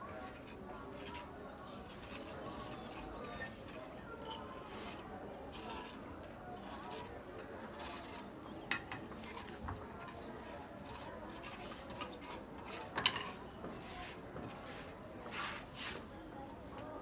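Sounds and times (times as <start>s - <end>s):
hand tool scraping rough surface: 10.4s - 16.1s.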